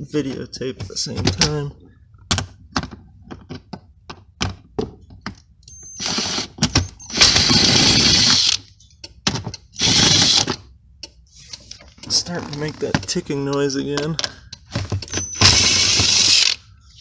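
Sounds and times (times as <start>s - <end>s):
power tool running: 6.0s - 8.6s, 9.8s - 10.6s, 15.4s - 16.6s.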